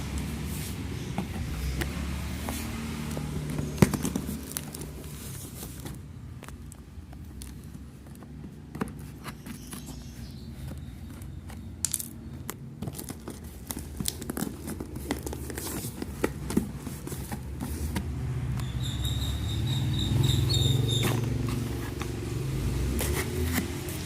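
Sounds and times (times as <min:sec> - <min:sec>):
tape tearing: 0:12.8 - 0:18.0, 0:22.9 - 0:24.0
knife cutting cardboard parcel: 0:20.7 - 0:24.0.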